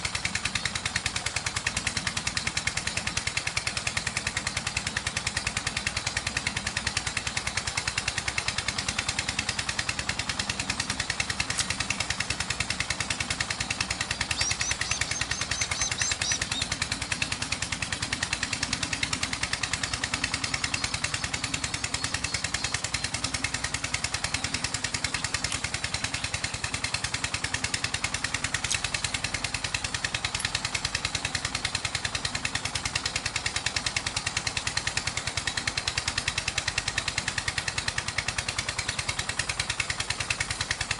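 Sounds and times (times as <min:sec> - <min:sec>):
small engine running: 0:00.0 - 0:40.9
high chirping: 0:14.3 - 0:16.7.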